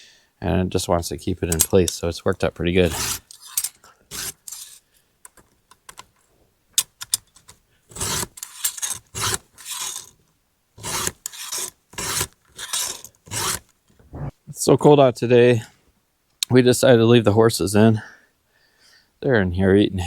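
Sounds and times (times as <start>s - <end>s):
file rasping on chainsaw chain: 2.8s - 4.8s, 7.9s - 10.2s, 10.8s - 13.7s
scrapes and clicks: 3.0s - 7.6s.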